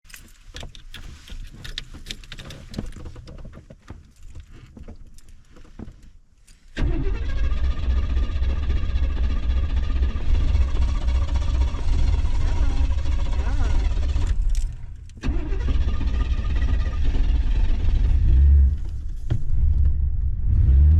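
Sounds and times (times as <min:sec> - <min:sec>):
clicks and knocks inside car: 0:00.2 - 0:06.1
car engine starting and rumbling: 0:06.7 - 0:20.9.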